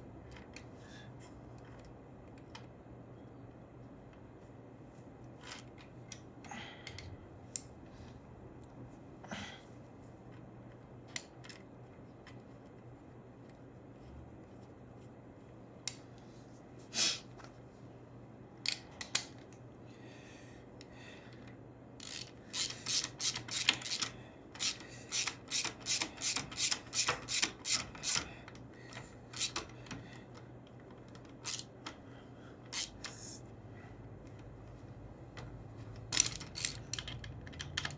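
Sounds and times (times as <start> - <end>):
ratchet wrench clicking: 22.0 - 28.3, 29.4 - 29.8, 31.4 - 31.7, 32.7 - 33.2, 36.1 - 37.9.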